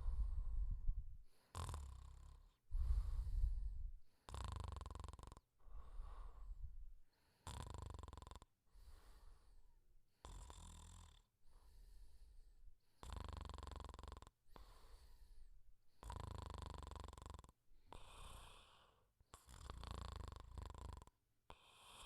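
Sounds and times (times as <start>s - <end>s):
soft breathy breath: 0.0s - 1.6s, 2.2s - 4.4s, 5.6s - 7.5s, 8.7s - 10.4s, 11.4s - 13.0s, 14.5s - 16.2s, 17.9s - 19.5s, 21.5s - 22.0s
rattling snores: 1.5s - 2.6s, 4.3s - 5.4s, 7.4s - 8.5s, 10.2s - 11.3s, 13.0s - 14.3s, 16.0s - 18.7s, 19.4s - 22.0s.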